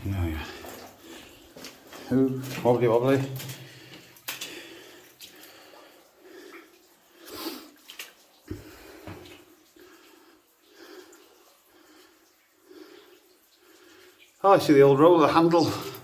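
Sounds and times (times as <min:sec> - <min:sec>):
water splashing and sloshing: 0:00.0 - 0:16.0.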